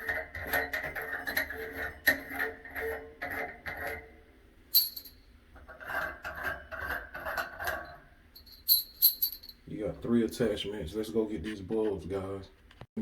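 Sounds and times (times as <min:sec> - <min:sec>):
sharp ringing clinks: 0:04.7 - 0:05.3, 0:08.4 - 0:09.6
metal hardware clinking and rattling: 0:04.7 - 0:09.7.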